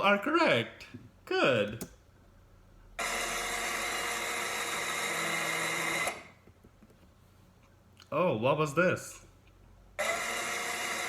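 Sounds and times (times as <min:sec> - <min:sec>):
electric screwdriver motor whining: 0:03.0 - 0:06.3, 0:10.0 - 0:11.0.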